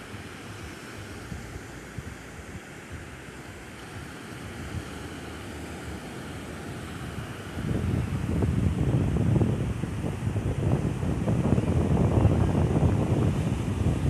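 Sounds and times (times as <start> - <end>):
sea surf on sandy beach: 0.0 - 14.0
wind buffeting microphone: 0.0 - 14.0.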